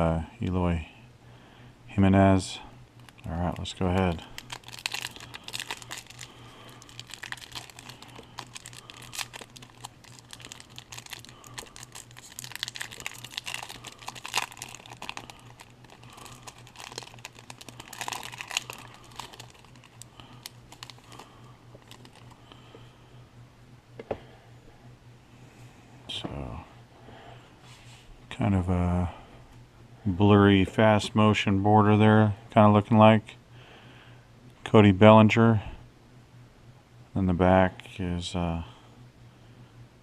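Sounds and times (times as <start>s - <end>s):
faint low hum: 0.0s - 40.0s
wrapper tearing and crinkling: 3.0s - 22.4s.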